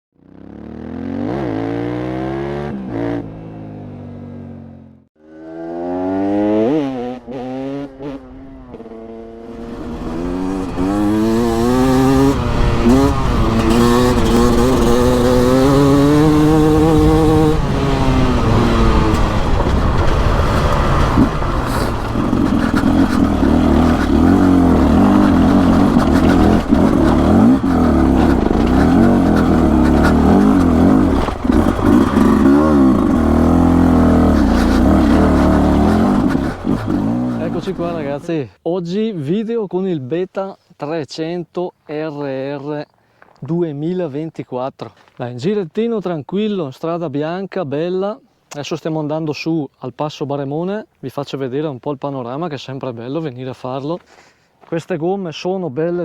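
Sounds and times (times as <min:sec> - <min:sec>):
two-stroke motorcycle engine revving: 0:00.2 - 0:38.3.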